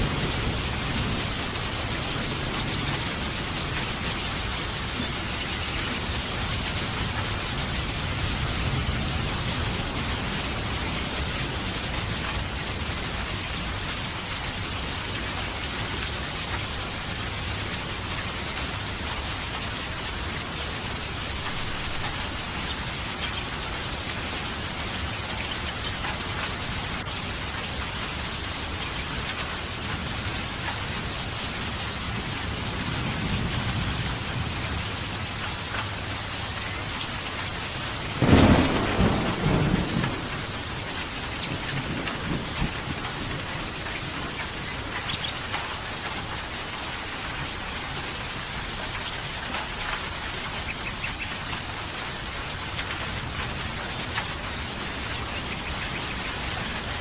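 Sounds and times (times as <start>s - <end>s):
distant thunder rumble: 0.0s - 12.9s, 36.8s - 46.4s
heavy rain: 0.0s - 57.0s
thunderclap rolling into rumble: 38.1s - 44.4s.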